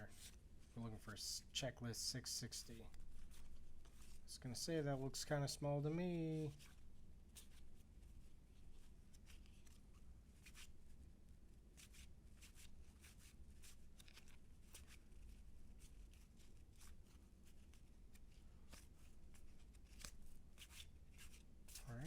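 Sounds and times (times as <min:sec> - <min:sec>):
cardboard cards swishing and flicking: 0:06.5 - 0:07.8, 0:11.8 - 0:22.0.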